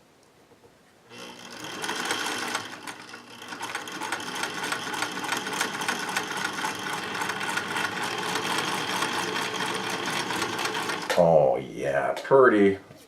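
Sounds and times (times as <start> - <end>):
sewing machine stitching: 1.1 - 11.1.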